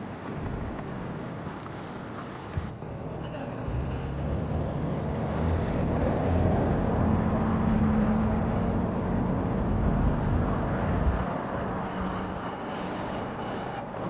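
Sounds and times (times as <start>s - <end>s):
engine hum: 0.0s - 14.0s
low rumble of traffic: 0.0s - 14.0s.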